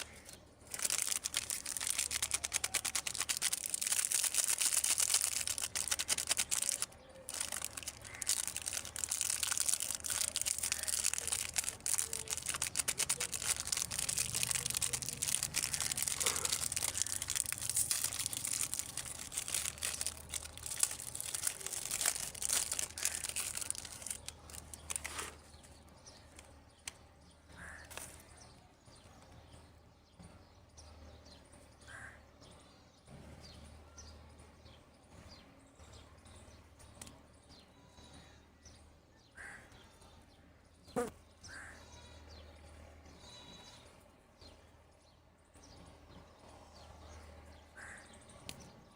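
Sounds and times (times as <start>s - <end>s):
plastic packaging crinkling: 0.0s - 25.5s.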